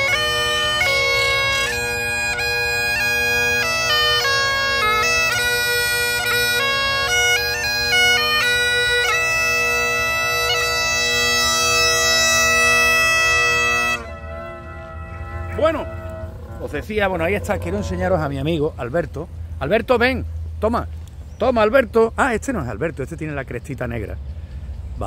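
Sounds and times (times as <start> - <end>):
bagpipe tune over drones: 0.0 - 18.2.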